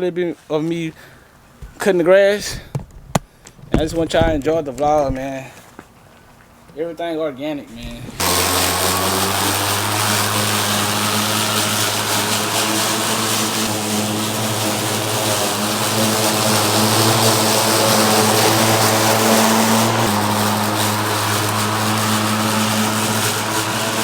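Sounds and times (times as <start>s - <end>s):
lawn mower engine droning: 7.7s - 24.0s.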